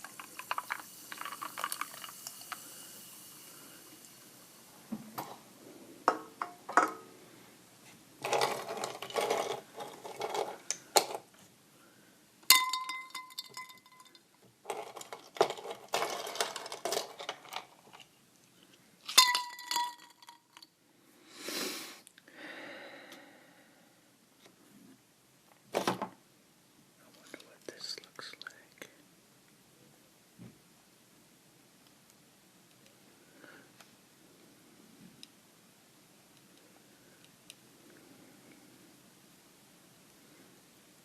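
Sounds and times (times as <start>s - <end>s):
ice cubes clinking in glass: 0.0s - 2.6s, 8.2s - 11.2s, 12.5s - 18.1s, 19.1s - 20.7s
glass ringing: 12.5s - 14.2s, 19.2s - 20.4s.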